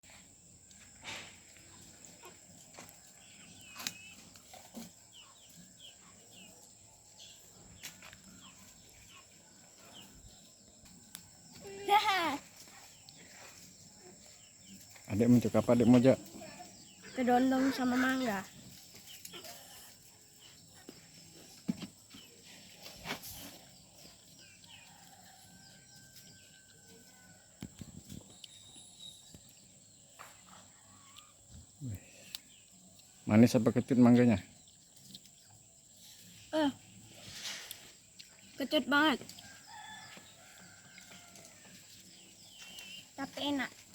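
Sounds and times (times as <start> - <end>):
faint bird chirps: 26.4 - 41.2.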